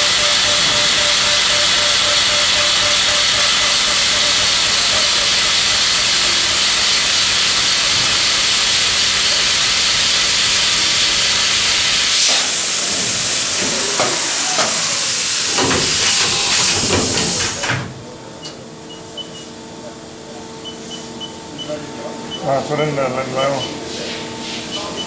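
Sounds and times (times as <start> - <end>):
milling machine hissing: 0.0 - 18.0
knocks and clatter: 15.5 - 18.0.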